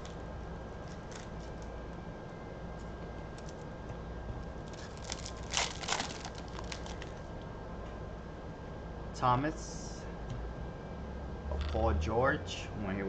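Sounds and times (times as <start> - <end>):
foil wrapper crinkling: 0.8 - 1.7, 4.6 - 7.2
foil tearing: 4.7 - 7.2.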